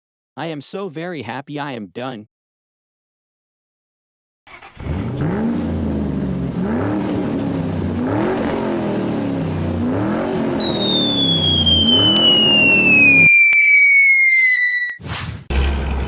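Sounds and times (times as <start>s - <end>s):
truck engine revving: 4.7s - 13.3s
high whistle sliding downward: 10.6s - 15.0s.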